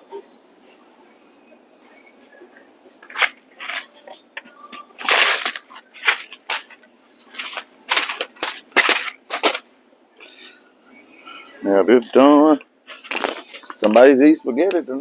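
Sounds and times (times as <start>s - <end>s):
grocery packaging crinkling: 3.0s - 9.7s, 12.3s - 14.8s.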